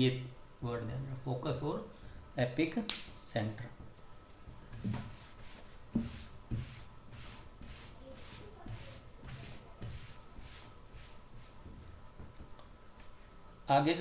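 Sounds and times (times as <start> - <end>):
scratchy writing strokes: 5.0 - 11.7.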